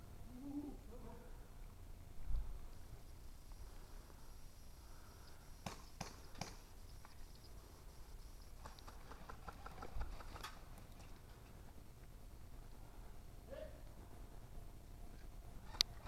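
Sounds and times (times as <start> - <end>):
distant airsoft gun cracks: 5.6 - 6.7.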